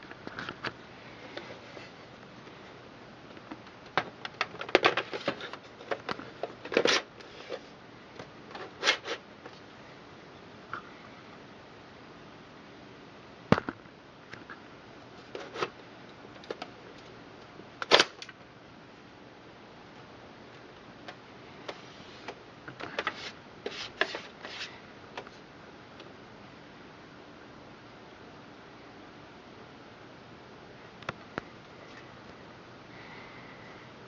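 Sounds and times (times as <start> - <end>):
steady hiss: 21.3 - 25.6.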